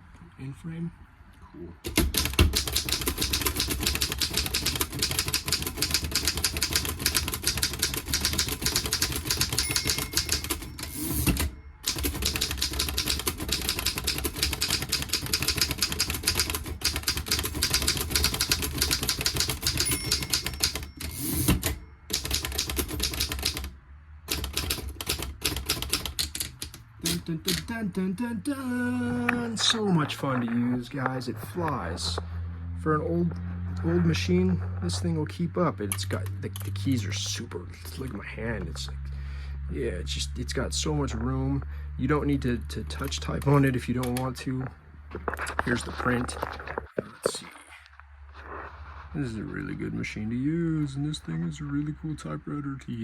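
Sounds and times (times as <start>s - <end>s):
manual typewriter typing: 1.8s - 23.7s, 24.3s - 27.8s
typewriter carriage return: 1.8s - 23.7s, 24.3s - 27.7s.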